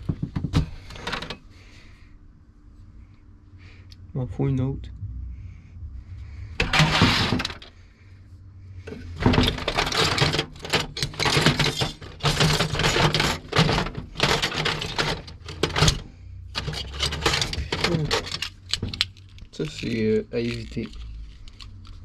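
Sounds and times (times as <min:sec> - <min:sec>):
hand tools clattering in toolbox: 0:06.6 - 0:07.7, 0:08.9 - 0:19.0.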